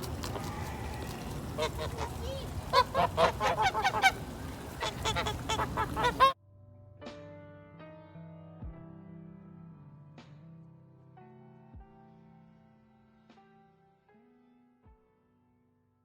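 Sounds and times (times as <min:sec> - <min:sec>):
geese honking: 0:00.0 - 0:06.4
outdoor background noise: 0:00.0 - 0:06.4.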